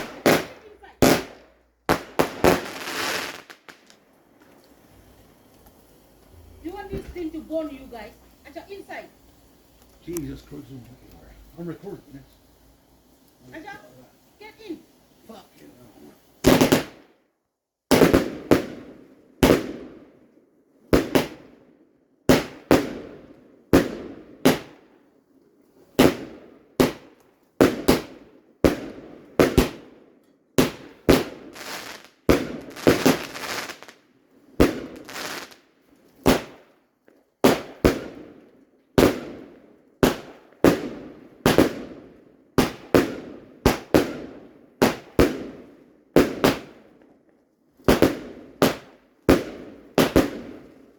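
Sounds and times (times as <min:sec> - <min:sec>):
fireworks bangs: 0:00.0 - 0:05.3, 0:06.2 - 0:12.3, 0:16.4 - 0:17.2, 0:17.9 - 0:20.2, 0:20.9 - 0:21.6, 0:22.2 - 0:25.0, 0:25.8 - 0:30.0, 0:30.6 - 0:34.0, 0:34.6 - 0:36.7, 0:37.4 - 0:47.1, 0:47.8 - 0:50.8.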